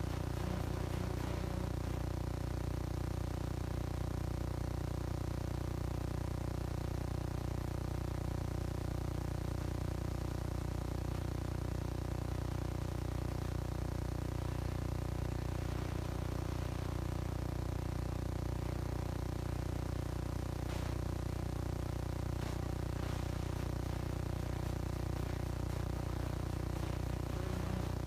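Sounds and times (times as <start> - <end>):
low hum: 0.0 - 3.8, 11.1 - 28.0.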